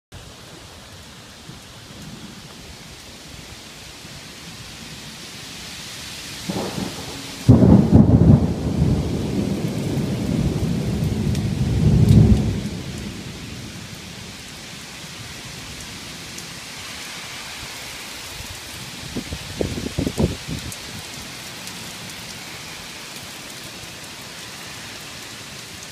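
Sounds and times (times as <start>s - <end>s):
steady rain: 0.1s - 25.9s
thunder rumble and crack: 6.5s - 14.0s.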